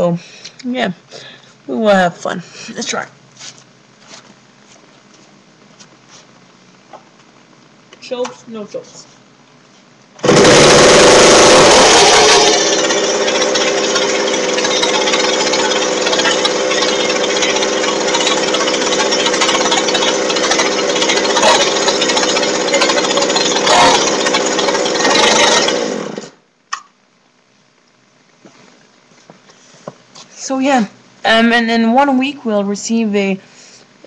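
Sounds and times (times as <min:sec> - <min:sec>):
chainsaw running: 0:10.2 - 0:26.4.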